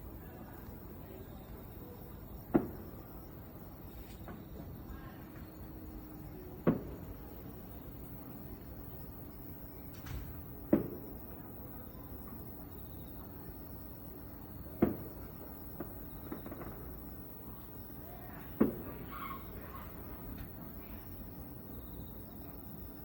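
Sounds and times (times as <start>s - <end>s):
firework booms echoing: 1.8s - 4.9s, 5.9s - 8.2s, 9.7s - 12.1s, 14.6s - 20.4s.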